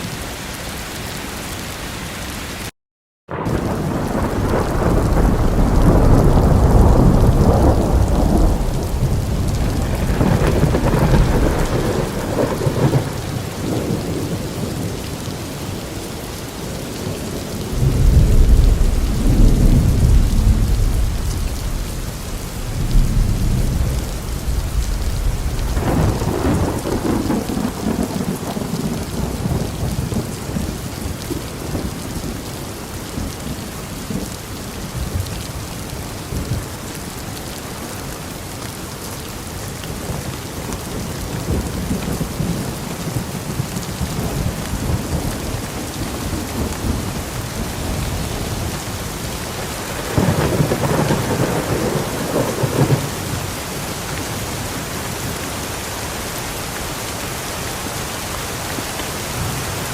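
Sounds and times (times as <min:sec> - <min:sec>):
steady rain: 0:00.0 - 0:02.7, 0:03.3 - 0:59.9
thunder rumbling: 0:03.3 - 0:15.4, 0:17.0 - 0:32.0, 0:40.9 - 0:53.9.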